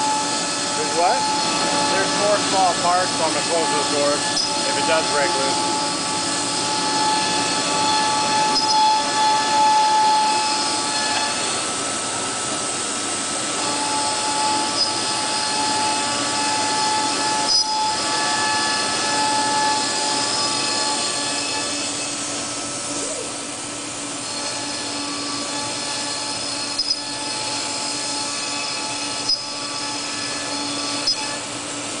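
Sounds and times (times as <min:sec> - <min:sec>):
router spindle whine: 0:00.0 - 0:32.0
rushing vacuum pump: 0:00.0 - 0:32.0.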